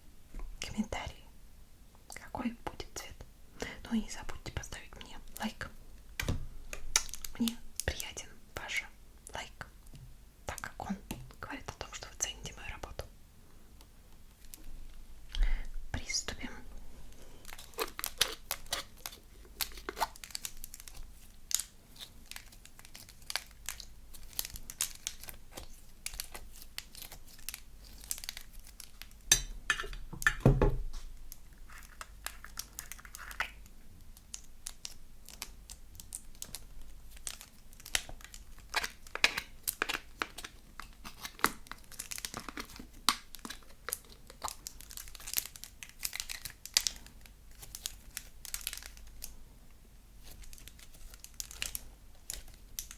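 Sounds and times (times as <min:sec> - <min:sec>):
slime crackling and popping: 0:06.7 - 0:07.9, 0:17.4 - 0:29.4, 0:30.9 - 0:49.4, 0:50.2 - 0:52.9.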